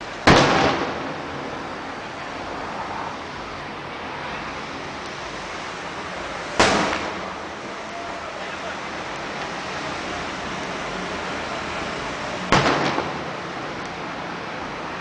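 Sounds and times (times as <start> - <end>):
fireworks sharp bangs: 0.0 - 2.1, 6.3 - 7.8, 12.0 - 13.8
steady rushing background: 0.9 - 15.0.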